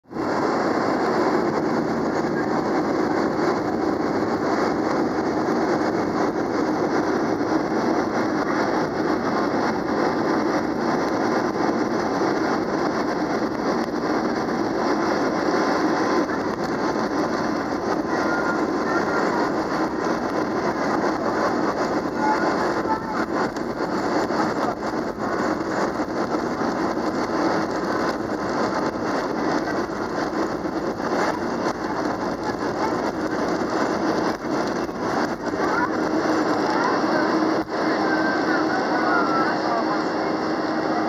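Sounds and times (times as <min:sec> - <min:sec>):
jet engines running: 0:00.0 - 0:41.0.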